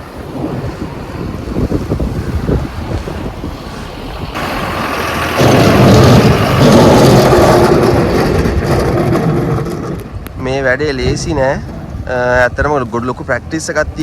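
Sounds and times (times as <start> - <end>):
tractor diesel engine running: 0.0 - 10.3
wind on microphone: 0.0 - 14.0.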